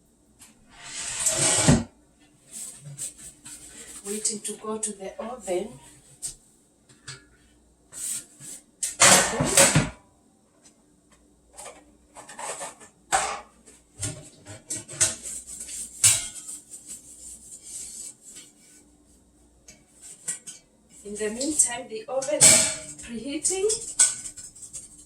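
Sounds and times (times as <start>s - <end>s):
faint steady hum: 0.0s - 25.0s
baking pan and utensils handled: 11.6s - 17.0s, 19.7s - 25.0s.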